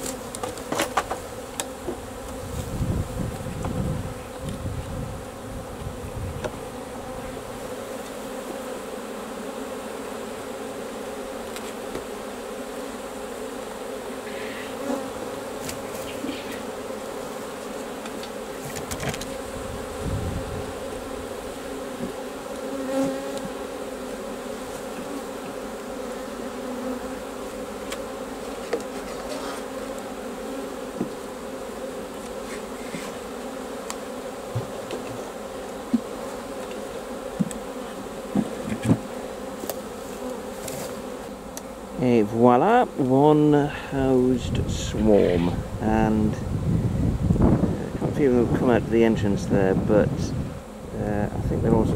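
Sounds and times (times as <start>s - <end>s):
bee swarm buzzing: 0.0s - 51.9s.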